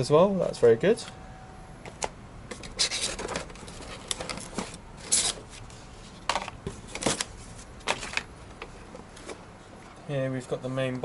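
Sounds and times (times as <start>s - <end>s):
packaging rustling and crinkling: 2.5s - 9.4s.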